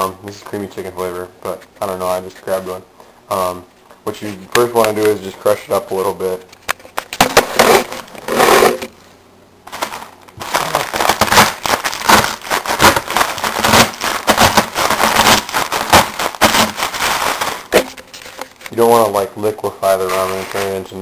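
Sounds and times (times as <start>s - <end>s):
dry noodles crushed by hand: 9.7s - 18.6s
plastic wrapper crinkling: 9.7s - 21.0s.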